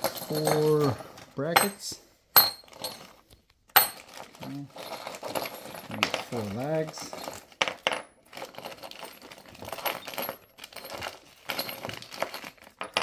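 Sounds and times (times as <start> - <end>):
metal hardware clinking: 0.0 - 13.0.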